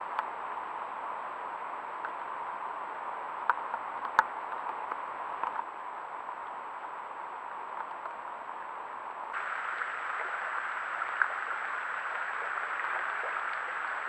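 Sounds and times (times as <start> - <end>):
stream rushing: 9.4 - 14.0.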